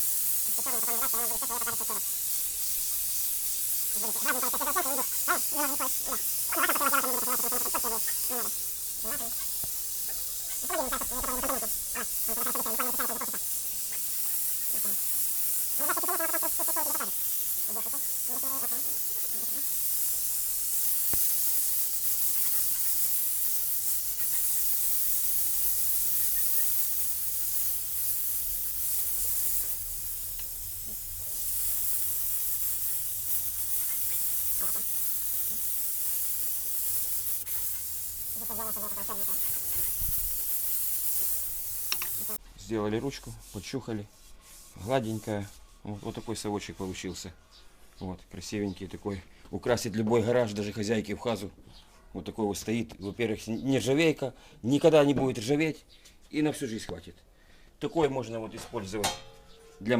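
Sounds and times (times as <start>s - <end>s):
gas torch flame hissing: 0.0s - 42.4s.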